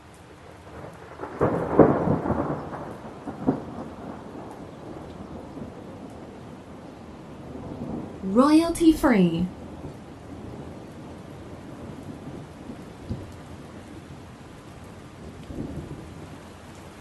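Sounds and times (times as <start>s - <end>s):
steady falling rain: 0.0s - 17.0s
thunder cracking and rumbling: 0.7s - 6.4s, 7.4s - 8.2s.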